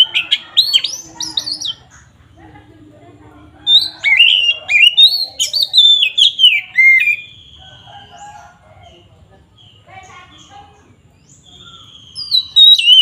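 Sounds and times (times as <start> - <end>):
bird singing whistled notes: 3.7 - 8.2, 11.2 - 13.0.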